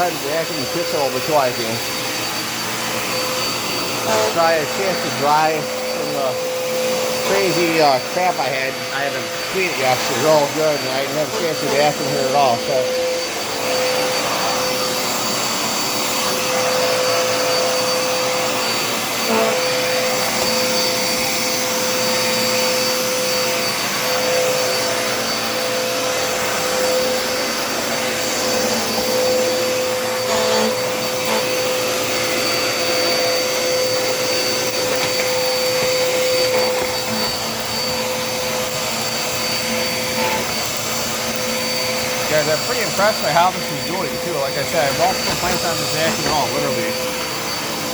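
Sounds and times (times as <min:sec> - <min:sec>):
vacuum cleaner running: 0:00.0 - 0:47.9.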